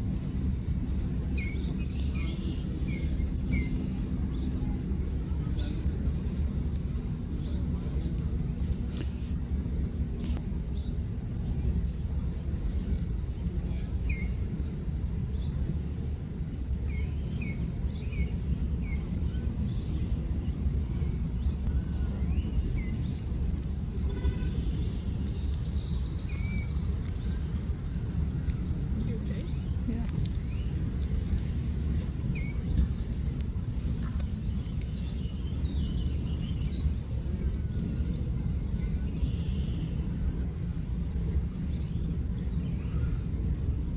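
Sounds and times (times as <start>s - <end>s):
low background rumble: 0.0s - 43.9s
wild birds chirping: 1.4s - 4.2s.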